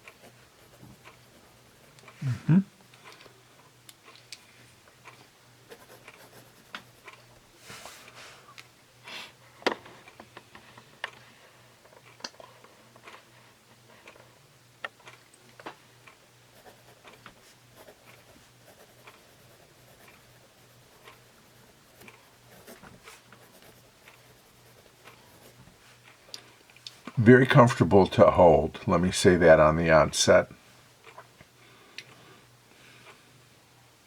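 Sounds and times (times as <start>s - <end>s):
pencil scratching on paper: 5.7s - 7.2s, 16.5s - 17.0s, 17.7s - 25.6s
sharp pencil ticks: 17.8s - 25.6s.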